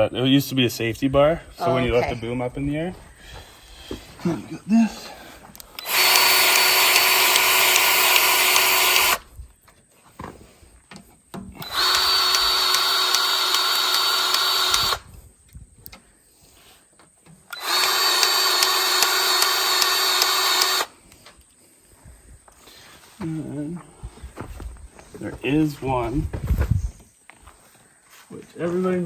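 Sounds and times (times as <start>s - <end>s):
grease gun running: 5.6s - 9.3s, 11.6s - 15.1s, 17.5s - 20.9s.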